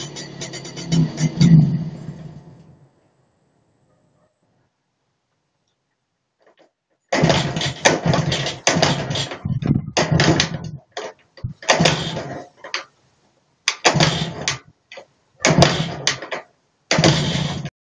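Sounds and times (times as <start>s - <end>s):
two-stroke engine firing bursts: 7.1s - 12.6s, 13.7s - 14.7s, 15.4s - 17.7s.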